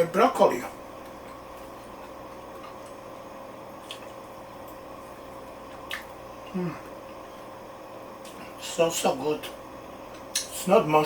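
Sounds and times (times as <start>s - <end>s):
low room hum: 0.0s - 11.0s
person chewing food: 1.0s - 7.5s
person humming: 6.5s - 6.9s.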